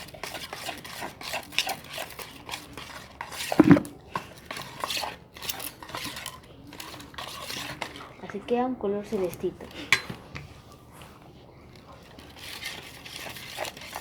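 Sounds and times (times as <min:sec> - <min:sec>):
spoon scraping and clicking dish: 0:00.0 - 0:08.0, 0:09.3 - 0:10.2.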